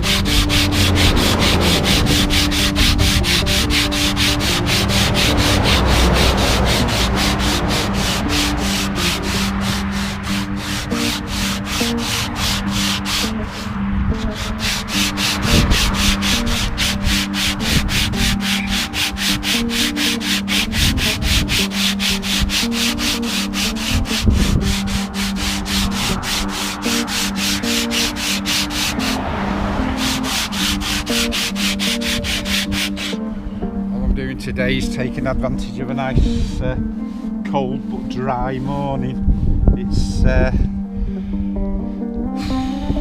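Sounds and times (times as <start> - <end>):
sandpaper rasping on wood: 0.0 - 29.3, 29.9 - 33.2.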